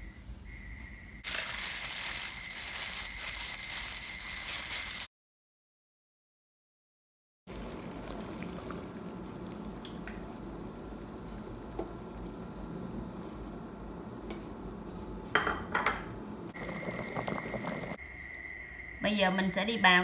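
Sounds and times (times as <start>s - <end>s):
dishes and utensils clinking: 15.4s - 16.1s.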